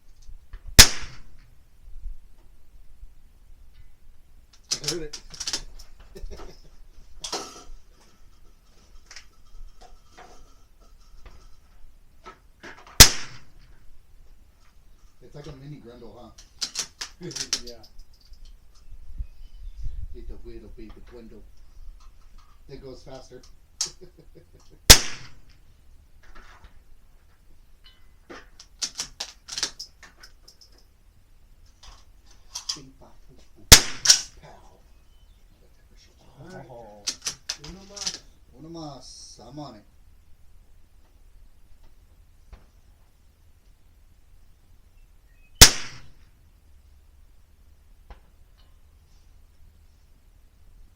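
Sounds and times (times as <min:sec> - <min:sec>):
rifle shot with echo: 0:00.8 - 0:01.5, 0:13.0 - 0:13.6, 0:24.9 - 0:25.5, 0:33.7 - 0:34.4, 0:45.6 - 0:46.2.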